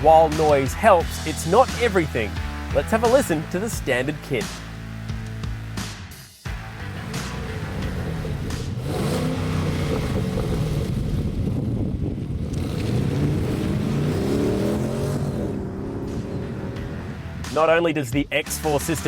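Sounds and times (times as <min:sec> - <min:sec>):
car engine revving: 0:06.5 - 0:18.0.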